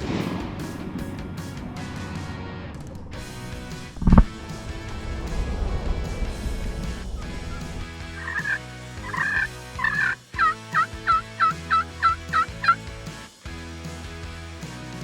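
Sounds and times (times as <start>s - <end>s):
turkey calls: 8.2s - 12.8s
turkey yelping: 8.2s - 12.8s.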